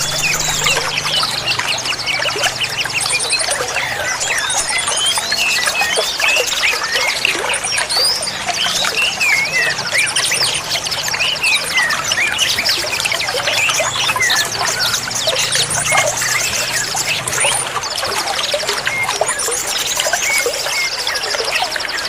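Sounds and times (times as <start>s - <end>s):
fast high rattling trill: 0.0s - 3.7s
small birds chirping and whistling: 0.0s - 22.0s
trickling water: 0.0s - 22.0s.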